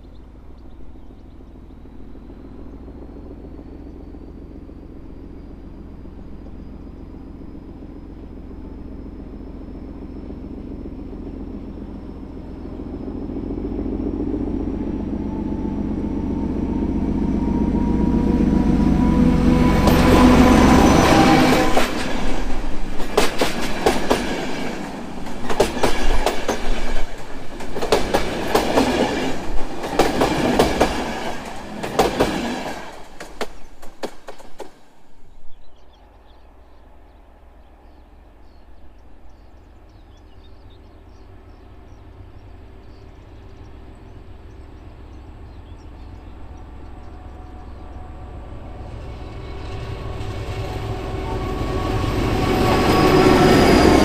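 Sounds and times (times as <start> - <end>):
low rumble of approaching train: 0.0 - 54.0
train wheels clacking over rail joints: 21.2 - 34.9.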